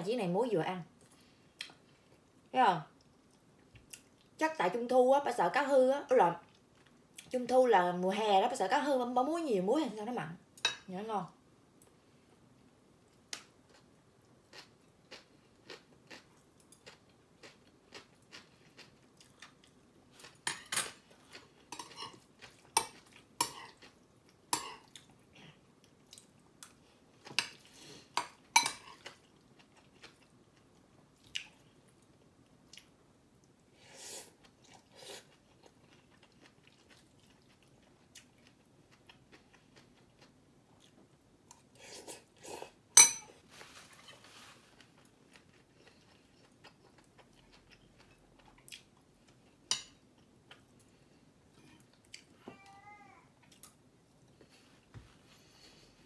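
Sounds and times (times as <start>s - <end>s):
person chewing: 13.1s - 20.4s, 21.0s - 42.8s, 43.6s - 51.2s.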